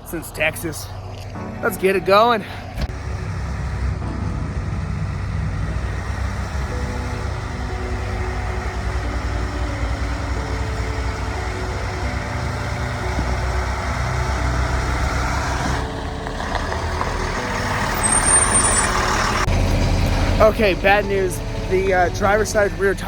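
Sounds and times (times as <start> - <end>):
truck diesel engine running: 0.0 - 23.0
high-pitched whistle: 17.9 - 19.4.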